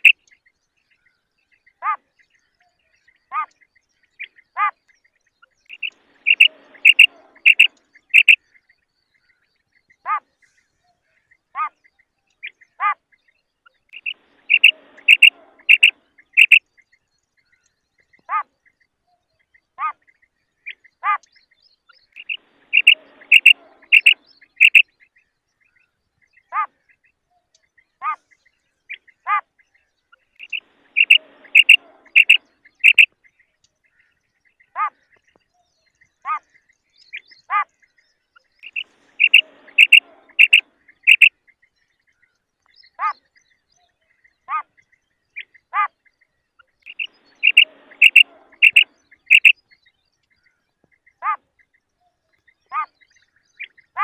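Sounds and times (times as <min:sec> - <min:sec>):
quail calling: 0:05.7 - 0:08.4, 0:14.0 - 0:16.6, 0:22.2 - 0:24.8, 0:30.4 - 0:33.1, 0:38.6 - 0:41.3, 0:46.9 - 0:49.5, 0:52.7 - 0:53.0.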